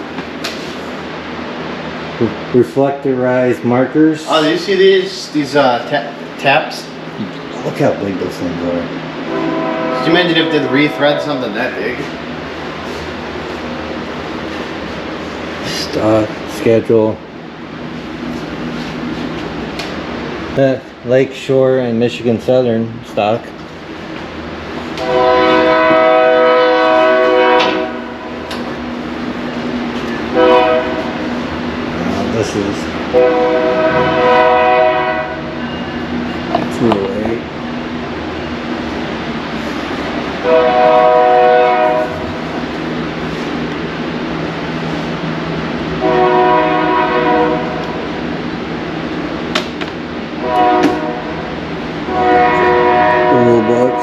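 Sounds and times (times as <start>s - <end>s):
steady rumble: 0.0s - 53.2s
train air horn blast: 9.2s - 12.2s, 25.0s - 28.7s, 30.3s - 35.9s, 40.4s - 42.7s, 46.0s - 48.1s, 50.4s - 54.0s.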